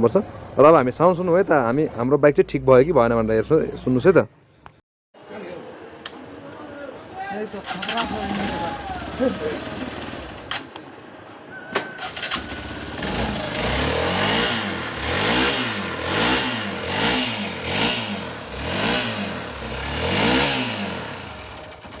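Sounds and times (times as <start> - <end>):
motorcycle engine revving: 7.5 - 10.8, 12.0 - 22.0.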